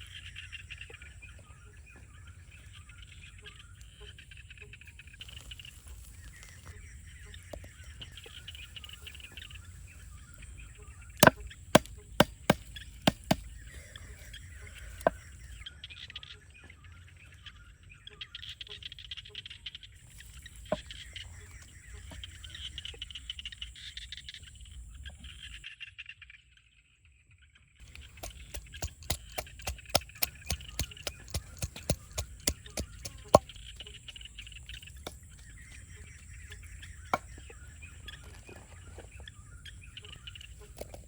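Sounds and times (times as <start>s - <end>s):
sharp knocks: 27.8s - 33.9s.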